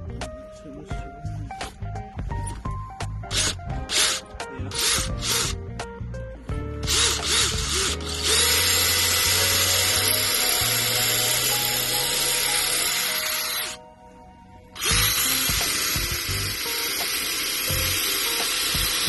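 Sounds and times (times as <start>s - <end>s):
background music: 0.0s - 19.0s
power drill boring into wall: 3.3s - 5.6s, 6.9s - 13.8s, 14.8s - 19.0s.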